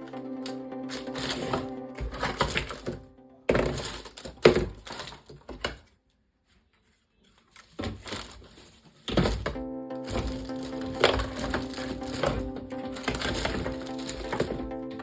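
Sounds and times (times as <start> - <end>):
plastic toy parts clicking and rattling: 9.2 - 14.6.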